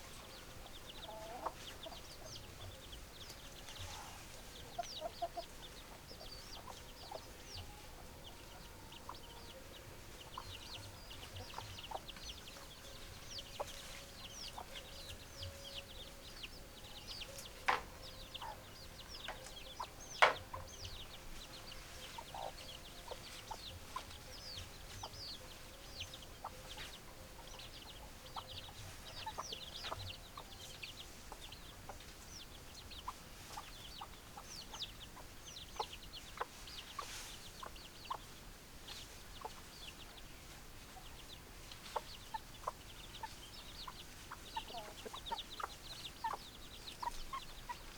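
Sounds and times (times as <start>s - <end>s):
chickens clucking: 0.0s - 47.9s.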